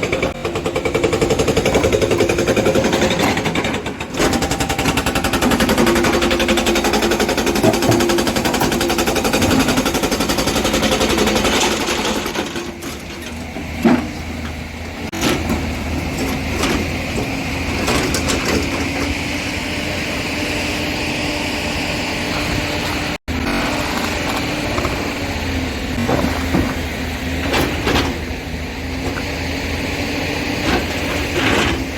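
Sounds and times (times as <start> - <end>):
diesel excavator engine running: 0.0 - 31.9
metal and rock clanking: 1.8 - 18.8.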